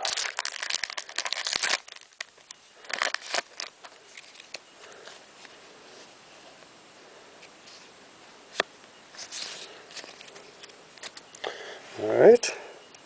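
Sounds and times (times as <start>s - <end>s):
foil wrapper crinkling and tearing: 0.0s - 4.6s.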